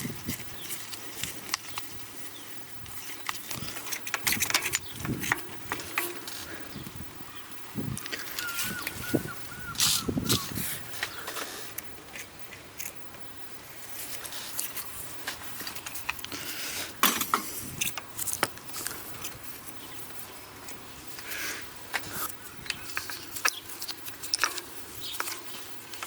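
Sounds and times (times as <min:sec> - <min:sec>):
scraping noises: 0:02.8 - 0:07.0.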